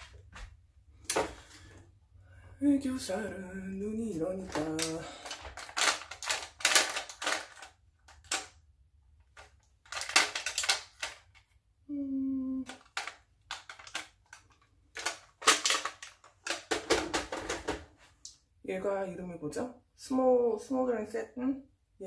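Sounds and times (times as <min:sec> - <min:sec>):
plastic makeup cases clattering: 0:04.1 - 0:11.6, 0:12.7 - 0:18.0
person humming: 0:11.9 - 0:12.7.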